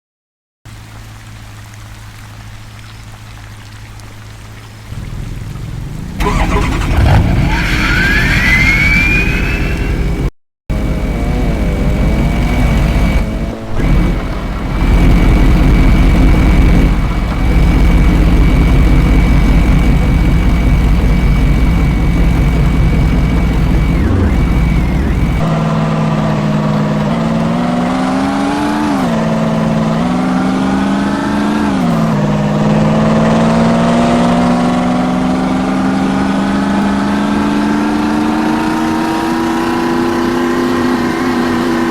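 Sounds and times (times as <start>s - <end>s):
diesel engine drone: 4.4s - 41.9s
turbo whistling: 5.0s - 10.3s, 12.4s - 26.0s.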